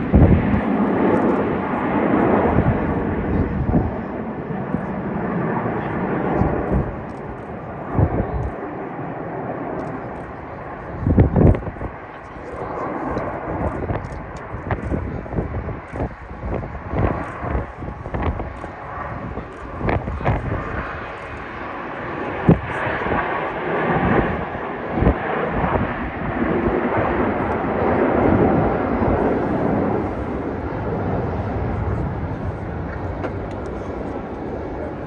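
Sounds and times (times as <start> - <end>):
jet aircraft passing: 0.0 - 35.0.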